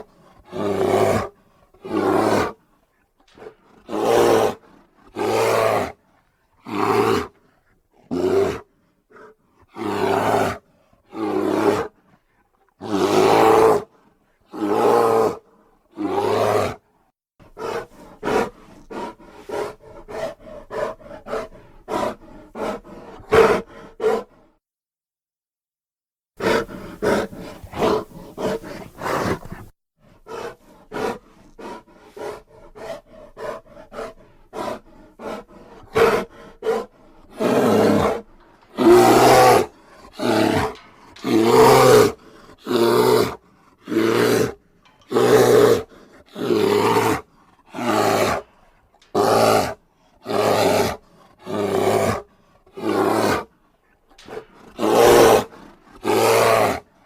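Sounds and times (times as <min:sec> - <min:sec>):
bear calling: 0:26.4 - 0:29.7.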